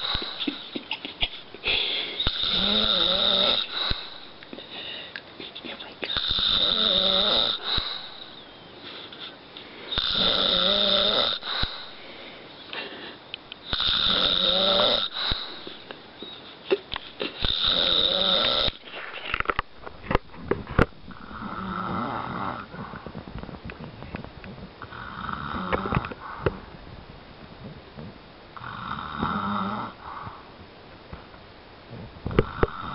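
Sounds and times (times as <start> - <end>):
man snoring: 2.2 - 4.1, 6.1 - 8.1, 9.9 - 11.9, 13.7 - 15.6, 17.4 - 18.8, 21.1 - 22.7, 24.9 - 26.1, 28.6 - 30.0, 32.4 - 32.9.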